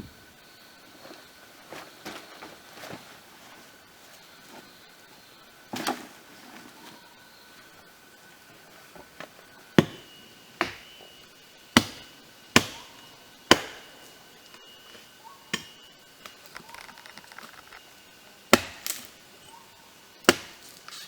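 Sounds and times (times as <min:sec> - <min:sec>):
axe chopping wood: 0:09.8 - 0:11.0, 0:11.8 - 0:12.9, 0:13.5 - 0:13.9, 0:15.5 - 0:15.8, 0:18.5 - 0:19.1, 0:20.2 - 0:20.6.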